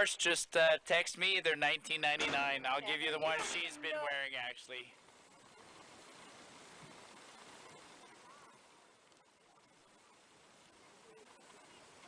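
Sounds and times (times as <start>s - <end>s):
faint outdoor hiss: 0.0s - 12.0s.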